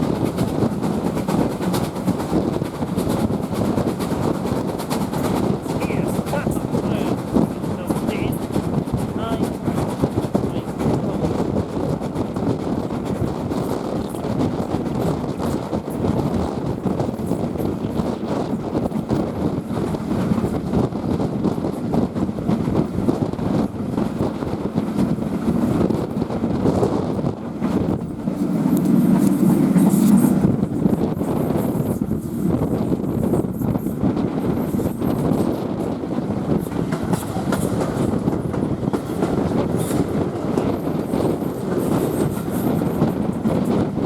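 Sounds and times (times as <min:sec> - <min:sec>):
train wheels rumbling on track: 0:00.0 - 0:44.0
deep rumble: 0:27.3 - 0:33.0.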